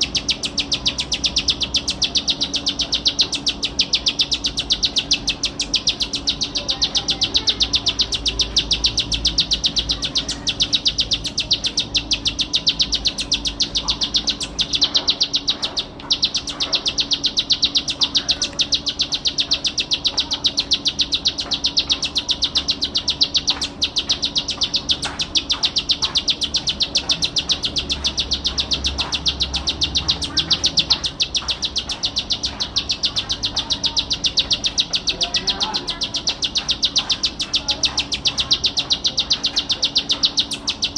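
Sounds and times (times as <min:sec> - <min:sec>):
bird singing fast trill: 0:00.0 - 0:40.9.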